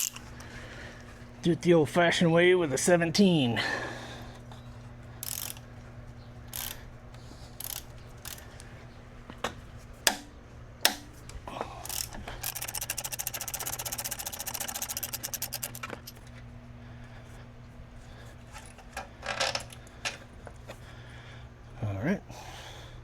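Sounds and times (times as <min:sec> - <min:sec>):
hand ratchet clicking: 0:05.2 - 0:05.7, 0:06.5 - 0:06.8, 0:07.6 - 0:08.5, 0:11.8 - 0:16.2
tool clicks and knocks: 0:11.9 - 0:16.2.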